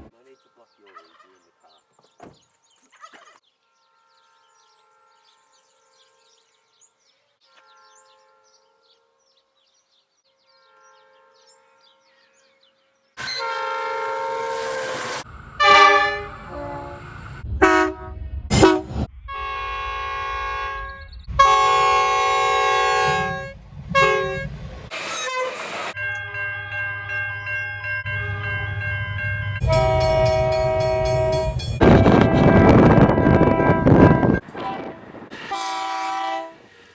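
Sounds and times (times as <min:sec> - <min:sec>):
train horn blasts: 0:07.4 - 0:09.2, 0:10.5 - 0:12.2, 0:13.2 - 0:36.8
train rumbling past: 0:13.2 - 0:36.9
loud rushing noise: 0:14.7 - 0:19.3.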